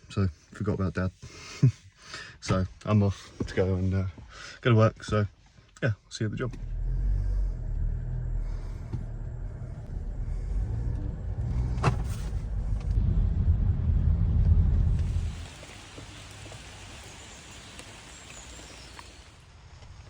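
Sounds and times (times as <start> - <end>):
car engine rumbling: 6.2 - 19.4.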